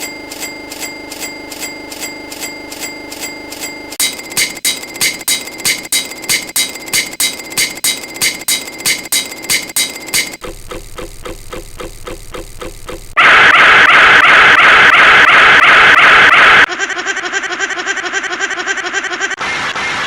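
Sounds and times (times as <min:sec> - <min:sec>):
loud steady pulsing noise: 0:00.0 - 0:14.0
pulsing sound effect: 0:00.0 - 0:16.5.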